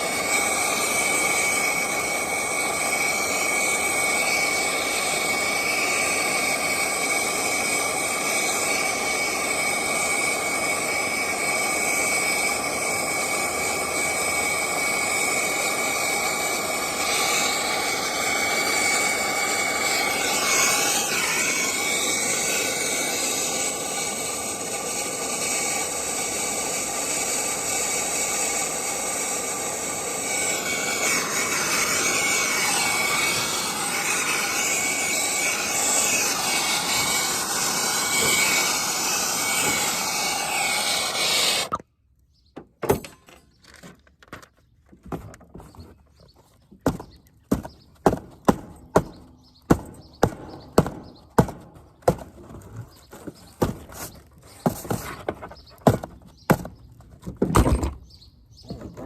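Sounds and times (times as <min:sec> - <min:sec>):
torch flame hissing: 0:00.0 - 0:41.8.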